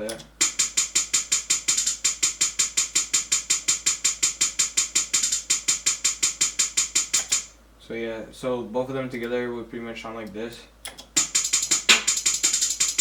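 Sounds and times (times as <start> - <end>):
electronic hi-hat ticks: 0.0 - 7.6, 10.8 - 13.0.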